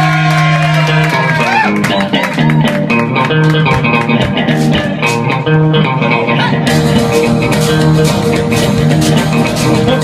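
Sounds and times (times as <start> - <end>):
band playing upbeat boogie: 0.0 - 10.0.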